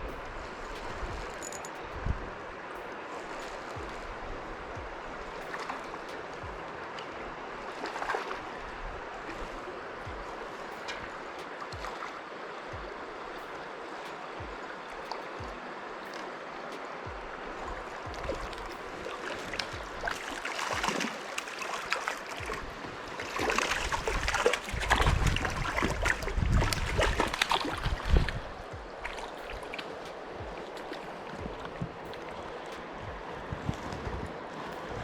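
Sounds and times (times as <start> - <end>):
river water over rocks: 0.0 - 35.0
splashing and knocking: 10.1 - 12.1, 18.0 - 29.6, 30.4 - 32.3.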